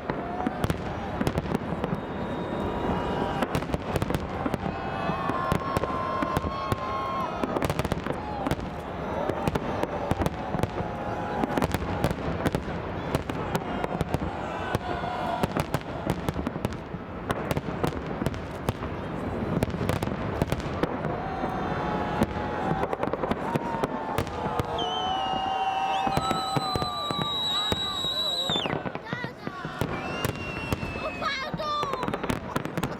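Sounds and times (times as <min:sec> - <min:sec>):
crowd voices: 0:00.0 - 0:32.9
fireworks bangs and crackling: 0:00.0 - 0:32.9
firework high whistle: 0:00.3 - 0:12.1, 0:21.3 - 0:29.0, 0:29.6 - 0:32.4.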